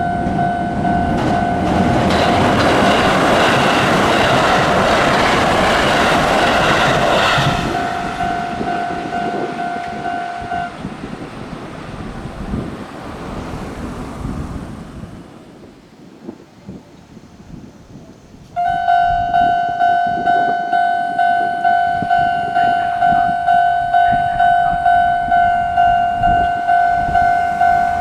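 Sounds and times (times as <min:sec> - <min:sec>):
crossing warning bell ringing: 0:00.0 - 0:12.6, 0:18.6 - 0:28.0
electric train passing: 0:00.0 - 0:16.4, 0:18.5 - 0:28.0.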